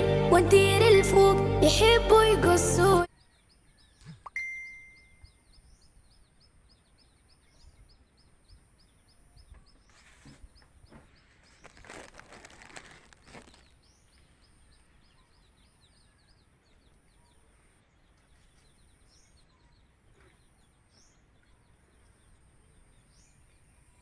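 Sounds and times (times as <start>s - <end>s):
small birds chirping: 3.1s - 24.0s
rustling: 9.9s - 14.1s.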